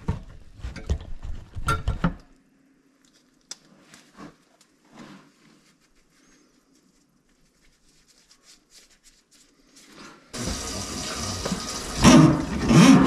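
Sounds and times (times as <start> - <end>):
water rushing through drain: 10.4 - 13.0.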